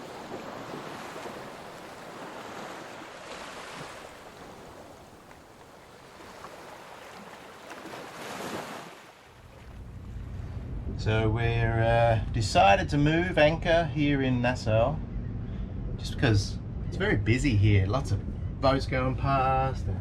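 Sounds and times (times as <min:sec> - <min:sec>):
sea waves washing: 0:00.0 - 0:10.7.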